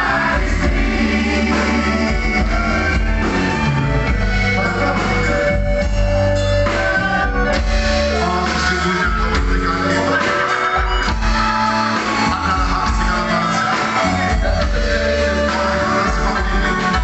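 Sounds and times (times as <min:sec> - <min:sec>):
live band music: 0:00.0 - 0:17.0
person singing: 0:08.1 - 0:17.0.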